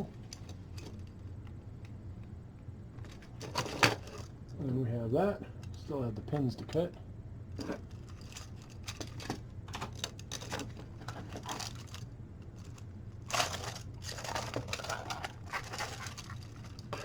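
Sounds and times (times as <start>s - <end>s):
steady low hum: 0.0s - 17.0s
plastic parts clicking and rustling: 3.0s - 4.3s, 7.6s - 17.0s.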